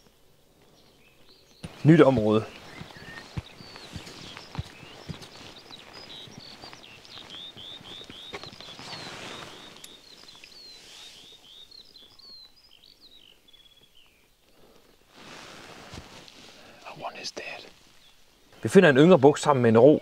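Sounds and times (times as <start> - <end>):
faint outdoor rustle: 0.0 - 20.0
songbird whistling: 1.3 - 14.2.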